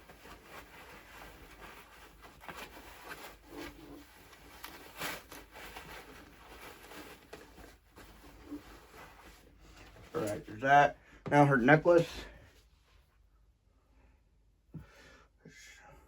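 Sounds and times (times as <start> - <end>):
cloth rustling: 0.0 - 10.8.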